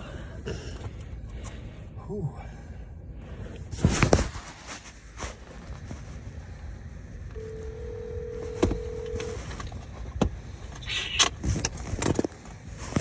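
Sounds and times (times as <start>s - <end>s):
low background rumble: 0.0s - 13.0s
telephone ringback tone: 7.4s - 9.4s.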